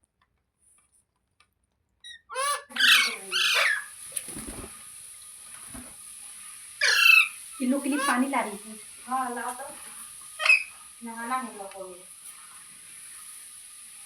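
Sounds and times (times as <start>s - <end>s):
parrot squawking: 2.0s - 4.0s, 6.8s - 8.5s, 10.4s - 10.8s
faint chirps: 10.4s - 10.9s.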